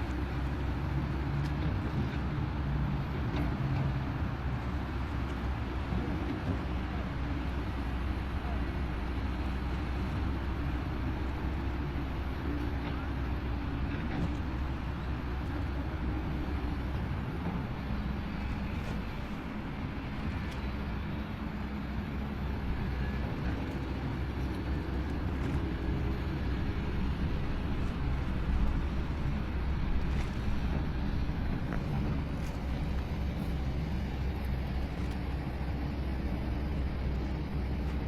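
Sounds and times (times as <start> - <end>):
diesel engine low rumble: 0.0 - 38.0.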